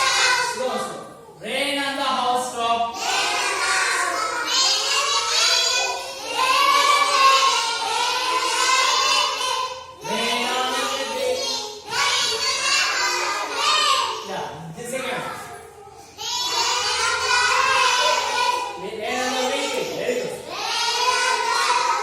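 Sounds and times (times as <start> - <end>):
children singing in chorus: 3.0 - 14.3, 16.2 - 22.0.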